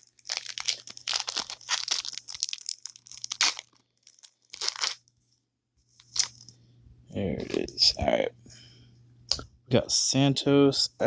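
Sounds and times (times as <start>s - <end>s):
wrapper tearing and crinkling: 0.0s - 5.1s, 6.0s - 6.5s.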